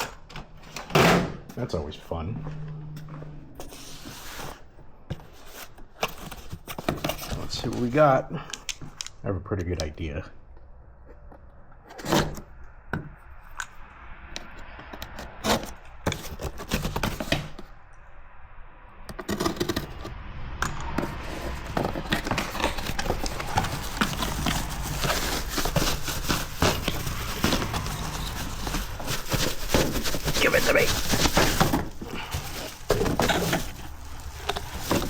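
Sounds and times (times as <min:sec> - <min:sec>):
cardboard box crinkling and rustling: 0:03.6 - 0:08.1, 0:15.4 - 0:17.6, 0:21.0 - 0:35.0
cardboard box knocks and scrapes: 0:15.4 - 0:17.6, 0:21.0 - 0:35.0.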